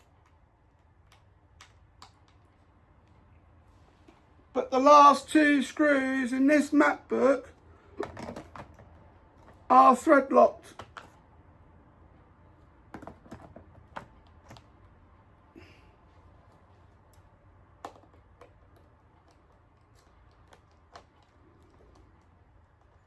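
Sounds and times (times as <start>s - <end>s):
faint clicks and light taps: 0.0s - 3.4s.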